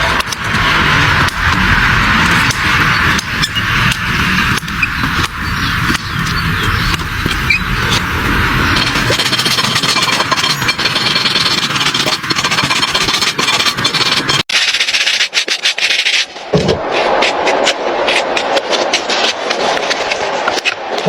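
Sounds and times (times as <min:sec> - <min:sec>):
farrier tools rasping hoof: 0:00.0 - 0:16.4.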